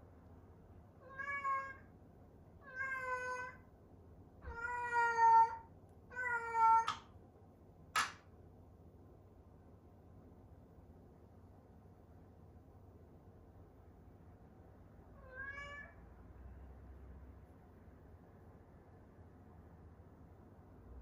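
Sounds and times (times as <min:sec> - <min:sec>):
cat meowing: 0:01.0 - 0:01.9, 0:02.6 - 0:03.6, 0:04.4 - 0:07.0, 0:15.2 - 0:16.0.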